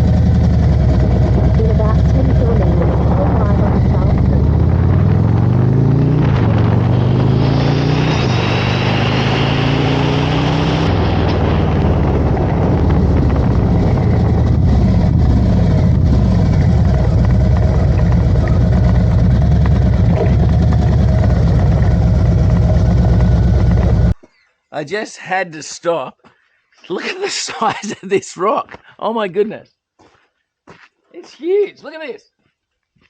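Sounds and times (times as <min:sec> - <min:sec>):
motorcycle engine running: 0:00.0 - 0:24.2
wind and road noise: 0:00.0 - 0:24.2.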